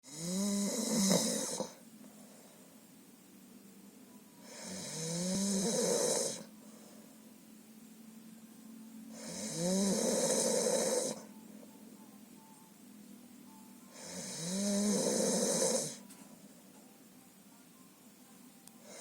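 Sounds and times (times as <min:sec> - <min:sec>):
person snoring loudly: 0:00.0 - 0:01.8, 0:04.4 - 0:06.5, 0:09.1 - 0:11.3, 0:13.9 - 0:16.0.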